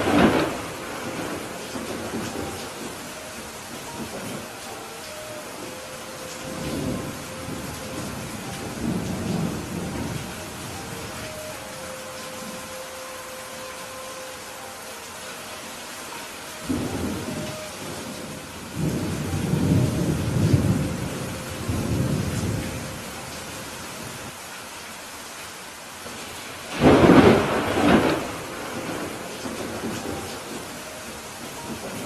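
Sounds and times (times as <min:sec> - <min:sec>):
rolling thunder: 0:00.0 - 0:04.6, 0:05.6 - 0:11.2, 0:26.7 - 0:32.0
steady rain: 0:00.0 - 0:32.0.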